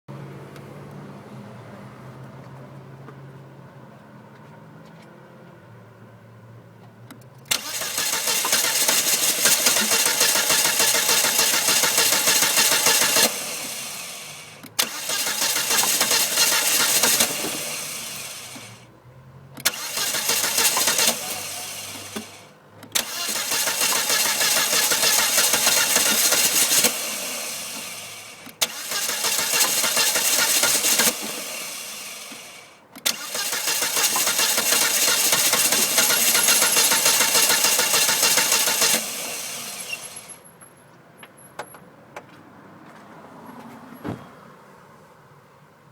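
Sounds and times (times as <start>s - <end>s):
starter cranking engine: 7.5s - 18.9s, 19.6s - 40.4s.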